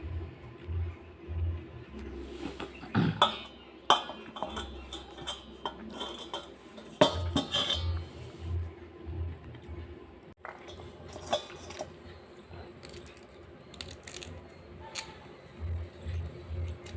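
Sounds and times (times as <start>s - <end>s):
low pulsing music beat: 0.0s - 6.0s, 15.6s - 16.9s
metal cookware clinking: 2.4s - 8.3s, 10.4s - 13.3s.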